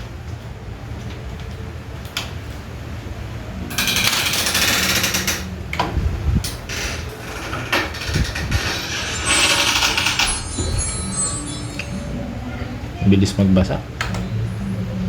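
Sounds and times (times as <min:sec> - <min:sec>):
low hum: 0:05.9 - 0:13.1.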